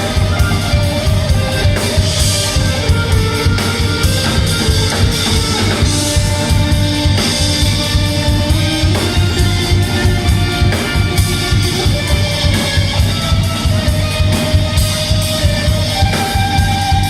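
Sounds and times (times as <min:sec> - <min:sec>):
bass guitar: 0:00.0 - 0:17.0
drum kit beat: 0:00.0 - 0:17.0
electric guitars: 0:00.0 - 0:17.0.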